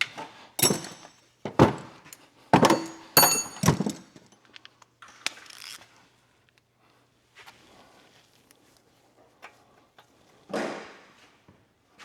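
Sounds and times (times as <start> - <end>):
metal exhaust parts clanking: 0.6 - 1.1, 2.6 - 4.2
tools clicking and rattling: 0.6 - 1.8, 2.6 - 4.3.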